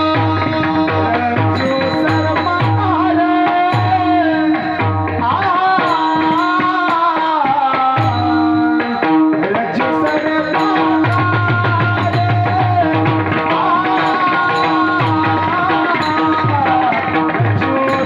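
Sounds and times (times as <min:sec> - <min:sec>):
person singing devotional song: 0:00.0 - 0:18.0
tabla strokes: 0:00.0 - 0:18.0.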